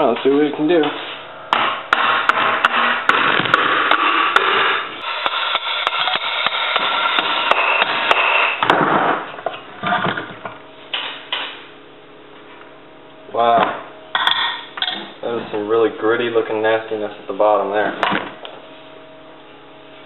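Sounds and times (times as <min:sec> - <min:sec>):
continuous tool noise: 0:00.0 - 0:08.7.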